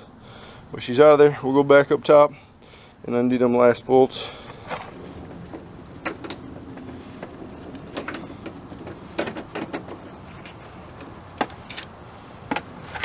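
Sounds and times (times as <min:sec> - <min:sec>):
hand tools clicking and knocking: 0:04.5 - 0:13.0.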